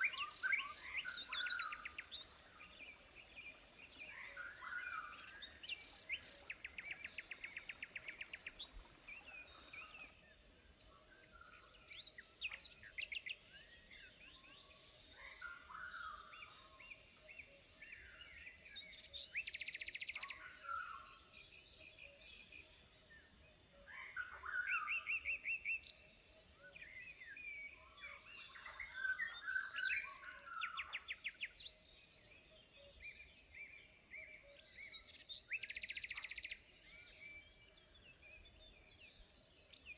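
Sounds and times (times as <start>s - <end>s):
songbirds calling and singing: 0.0s - 39.9s.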